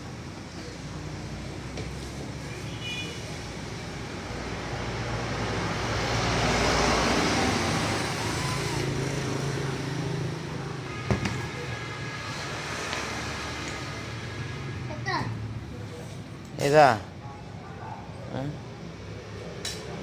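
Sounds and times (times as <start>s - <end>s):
motor vehicle passing: 4.5s - 10.8s.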